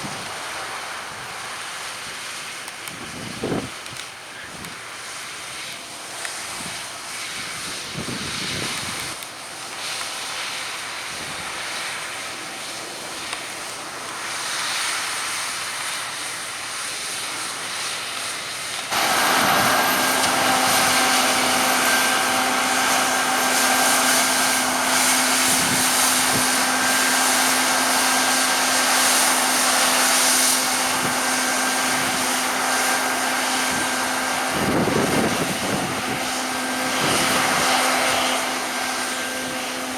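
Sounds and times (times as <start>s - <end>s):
wind: 0.0s - 39.9s
harvest machinery engine: 16.3s - 39.9s
machine whine: 18.9s - 39.9s.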